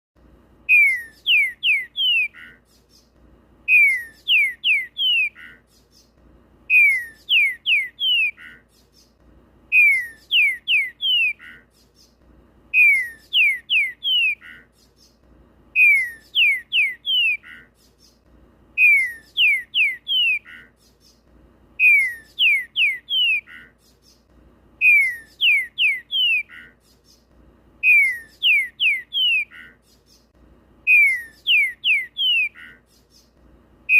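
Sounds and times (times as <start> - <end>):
bird singing whistled phrase: 0.7 - 2.6, 3.7 - 5.6, 6.7 - 8.6, 9.7 - 11.6, 12.8 - 14.6, 15.8 - 17.6, 18.8 - 20.6, 21.8 - 23.7, 24.8 - 26.7, 27.8 - 29.7, 30.9 - 32.8.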